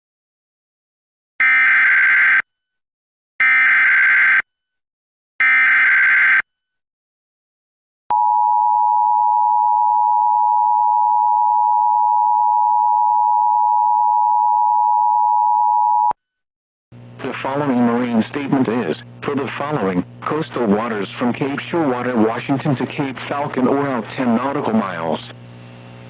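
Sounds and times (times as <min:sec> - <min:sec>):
steady warning alarm tone: 0:01.4 - 0:02.4, 0:03.4 - 0:04.4, 0:05.4 - 0:06.4.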